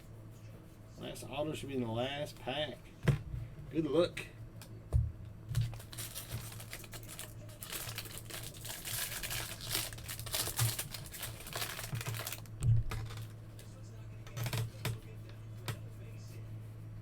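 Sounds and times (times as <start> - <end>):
foil wrapper tearing and crinkling: 5.5 - 13.3.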